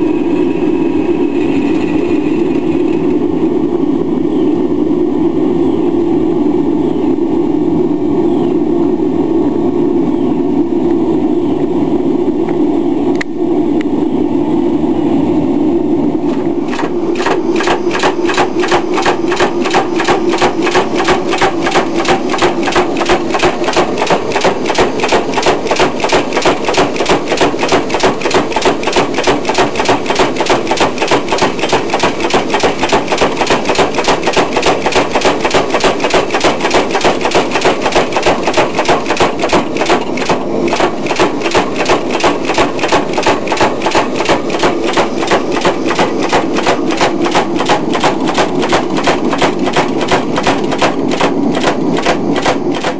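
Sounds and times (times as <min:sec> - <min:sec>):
motor hum: 0:16.2 - 0:52.9
power hammer striking hot steel: 0:16.3 - 0:52.9.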